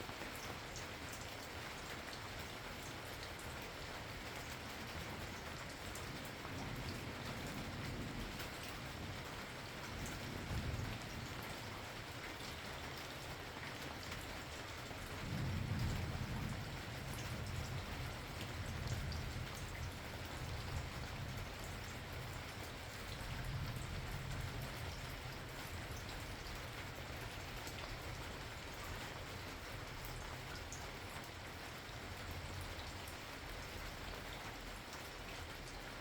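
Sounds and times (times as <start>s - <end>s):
steady rain with drops: 0.0s - 36.0s
thunder rumbling: 15.2s - 22.1s.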